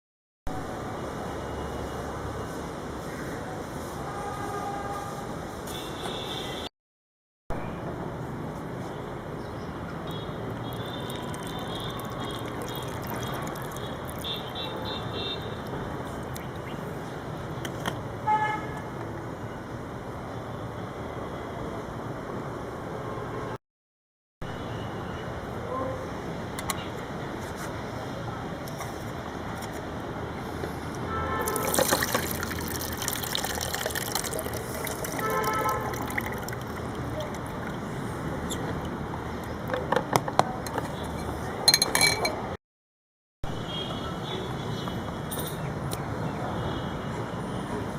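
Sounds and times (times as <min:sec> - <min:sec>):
traffic noise: 0:00.5 - 0:06.7, 0:07.5 - 0:23.6, 0:24.4 - 0:42.6, 0:43.4 - 0:47.9
water pouring over nuts: 0:10.6 - 0:14.9, 0:31.4 - 0:37.9.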